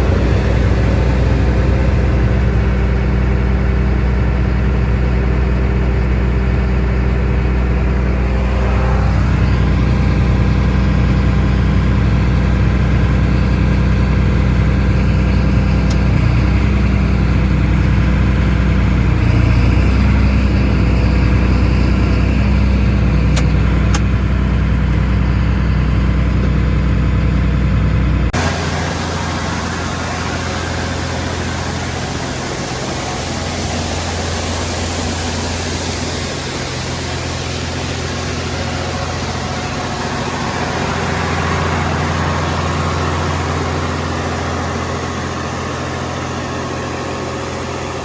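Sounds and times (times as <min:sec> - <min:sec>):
combine harvester engine drone: 0:00.0 - 0:48.0.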